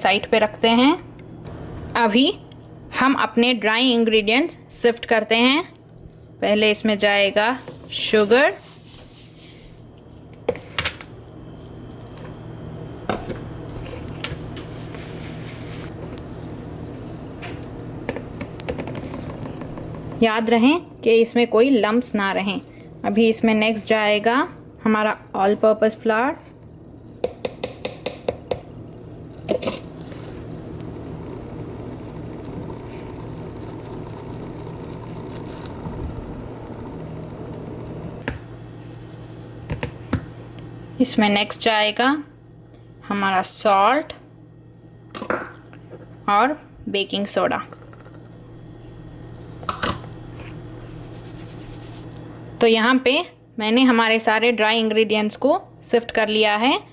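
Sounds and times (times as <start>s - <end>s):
flour sifter whirring: 6.4s - 19.9s, 29.7s - 44.0s, 46.6s - 53.0s
sugar sifting through a sieve: 7.6s - 10.2s, 14.4s - 16.6s, 38.7s - 39.6s, 50.9s - 52.1s.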